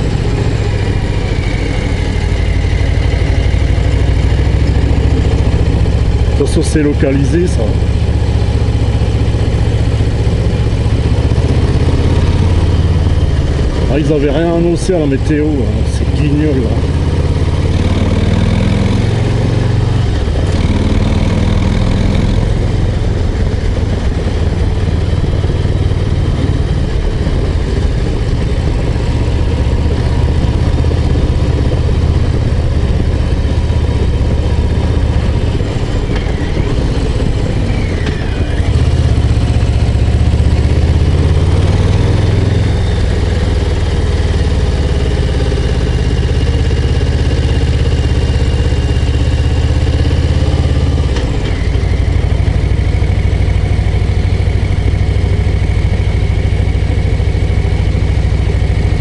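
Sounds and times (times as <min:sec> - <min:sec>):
motorcycle engine running: 0:00.0 - 0:59.0.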